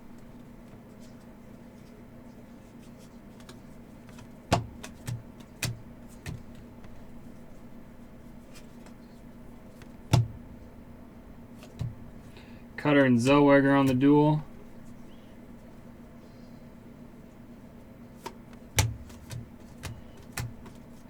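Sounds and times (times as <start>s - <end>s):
steady low hum: 0.0s - 21.0s
cards clicking and knocking on table: 3.3s - 7.0s, 18.2s - 21.0s.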